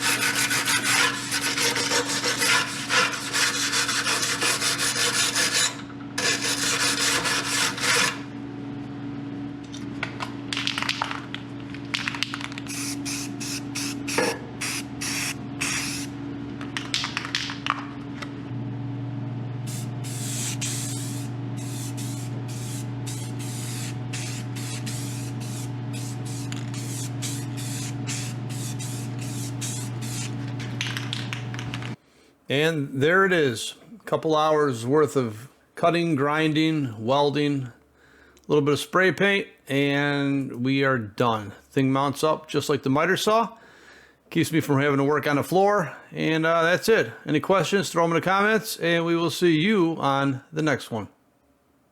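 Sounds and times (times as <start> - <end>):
steady low hum: 0.0 - 32.1
spray paint can hissing: 12.2 - 16.1, 19.6 - 31.9.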